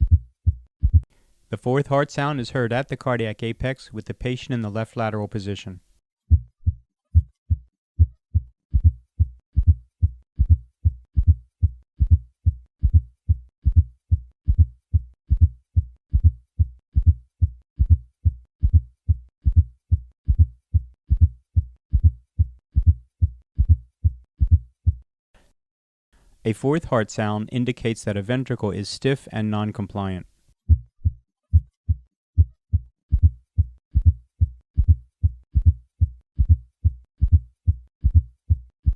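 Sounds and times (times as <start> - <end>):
heartbeat gallop rhythm: 0.0 - 1.1, 6.3 - 25.0, 30.7 - 38.9.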